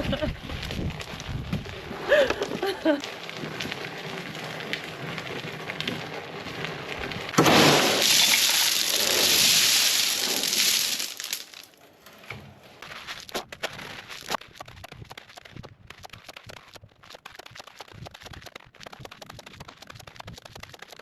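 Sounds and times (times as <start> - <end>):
gravel crunching and scraping: 0.0 - 21.0
gravel pouring from wheelbarrow: 0.5 - 11.8.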